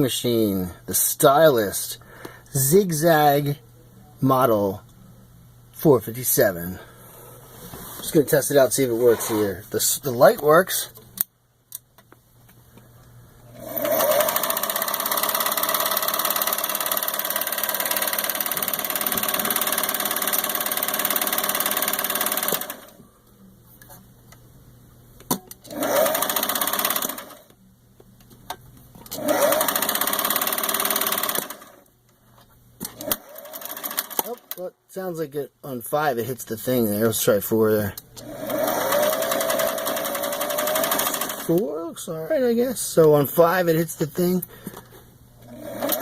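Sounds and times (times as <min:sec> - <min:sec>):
sewing machine running: 0:13.5 - 0:23.0, 0:25.6 - 0:27.5, 0:29.1 - 0:31.8, 0:33.0 - 0:34.6, 0:38.2 - 0:41.6, 0:45.4 - 0:46.0.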